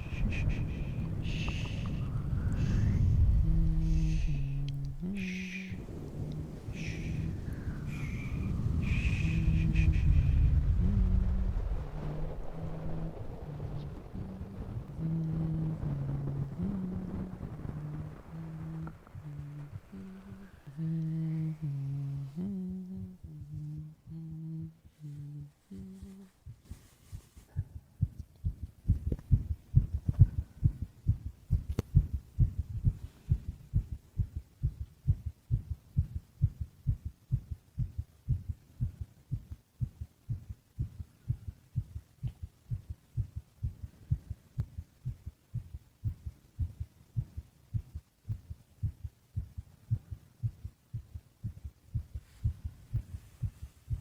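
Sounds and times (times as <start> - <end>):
heartbeat thumps: 0.0 - 25.2, 25.8 - 54.0
person humming: 0.0 - 26.5.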